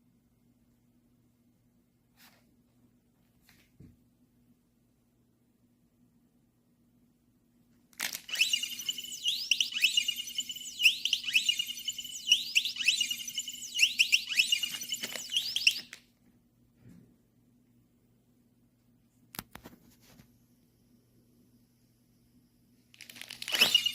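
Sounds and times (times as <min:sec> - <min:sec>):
electronic anti-theft alarm: 0:08.3 - 0:16.0, 0:23.5 - 0:23.9.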